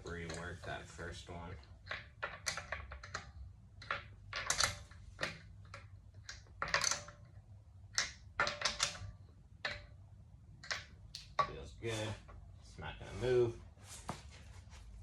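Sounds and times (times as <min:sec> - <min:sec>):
metallic clicks of bolts: 0:07.9 - 0:09.9.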